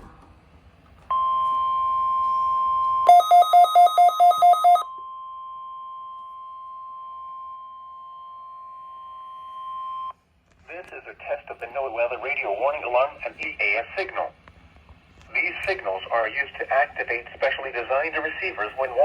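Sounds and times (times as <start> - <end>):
pulsed beeping alarm: 1.1 - 10.1
steady warning alarm tone: 1.1 - 10.1.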